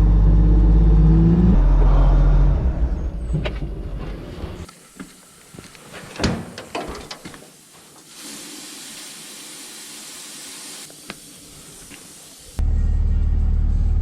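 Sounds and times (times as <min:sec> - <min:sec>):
steady hiss: 0:04.7 - 0:12.6.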